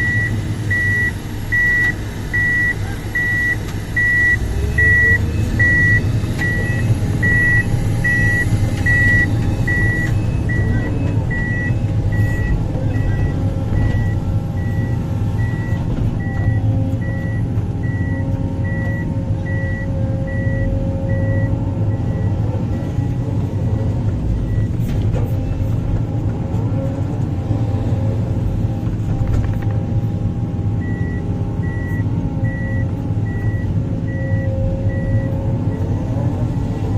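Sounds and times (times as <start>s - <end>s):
back-up alarm beeping: 0.0s - 22.4s, 30.8s - 35.9s
heavy machinery diesel engine: 0.0s - 36.9s.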